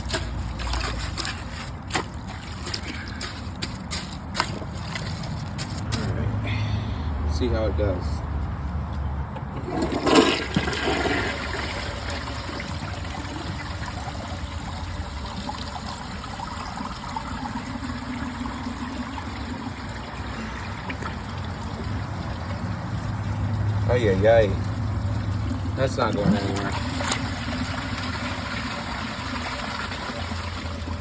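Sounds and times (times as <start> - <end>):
toilet flushing: 9.6 - 31.0
water swirling in toilet bowl: 9.6 - 31.0.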